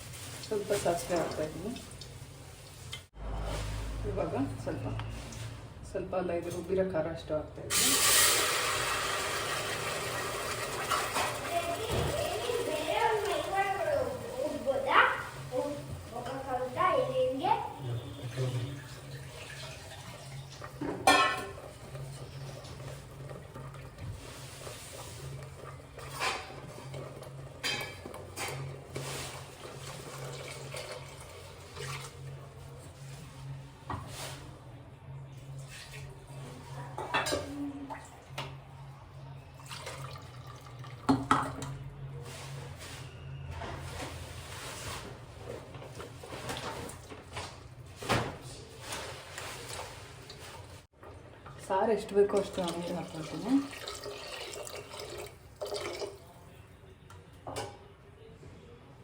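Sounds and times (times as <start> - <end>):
kitchen utensils clattering: 18.2 - 22.2.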